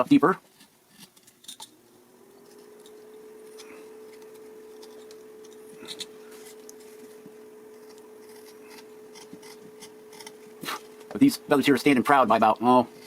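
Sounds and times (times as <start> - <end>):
burr scratching wood: 0.0 - 13.0
rotary carving tool whine: 0.0 - 13.0.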